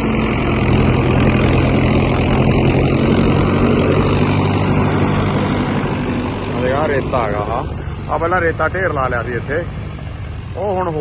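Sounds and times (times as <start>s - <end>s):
tractor engine running: 0.0s - 11.0s.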